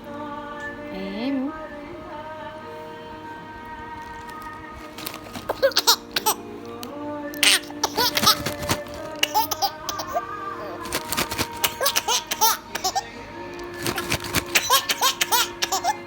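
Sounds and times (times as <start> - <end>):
background music: 0.0 - 16.0
baby laughing: 5.1 - 6.5, 7.4 - 16.0.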